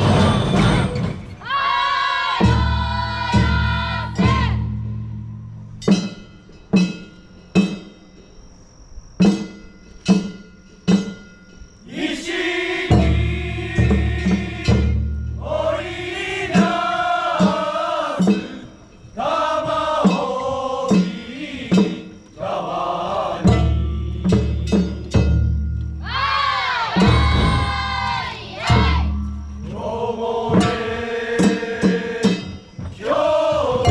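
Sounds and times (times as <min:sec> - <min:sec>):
festival drum beats: 0:00.0 - 0:01.5, 0:02.2 - 0:08.0, 0:12.0 - 0:33.9
group of voices chanting: 0:00.0 - 0:04.6, 0:11.9 - 0:23.9, 0:26.0 - 0:33.9.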